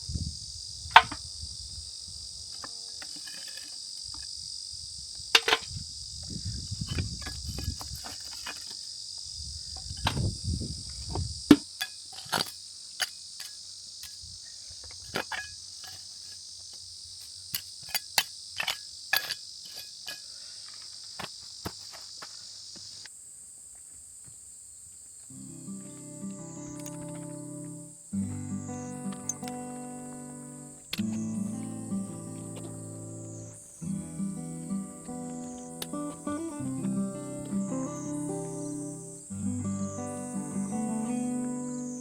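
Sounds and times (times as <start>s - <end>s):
insects shrilling: 24.6s - 42.0s.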